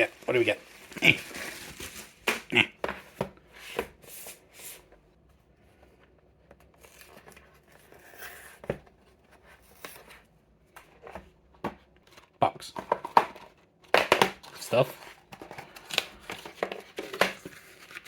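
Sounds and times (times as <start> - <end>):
paper rustling and tearing: 0.0 - 2.5.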